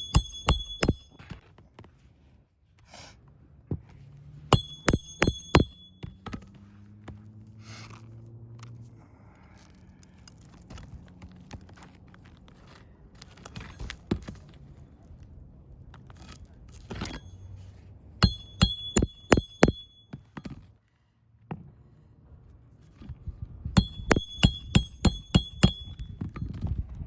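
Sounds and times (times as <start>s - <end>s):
hammer striking nails: 0.0s - 1.3s, 4.5s - 6.4s, 18.2s - 20.0s, 23.8s - 26.1s.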